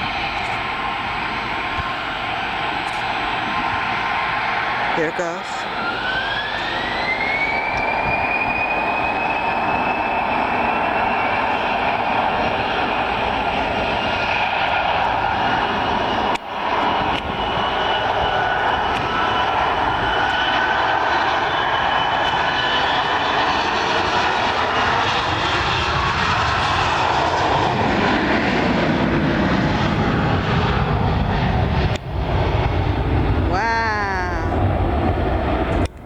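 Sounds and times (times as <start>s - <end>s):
jet airplane engine roaring: 0.0s - 36.0s
whining tones sliding downward: 5.6s - 12.1s.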